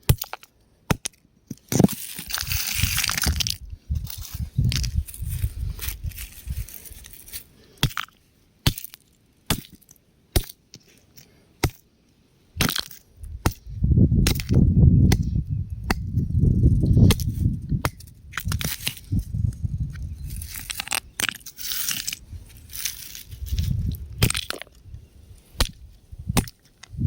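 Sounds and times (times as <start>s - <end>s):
rocks cracking: 0.1s - 10.5s, 17.1s - 24.8s
rocks crunching and grinding: 0.1s - 11.8s, 12.6s - 27.0s.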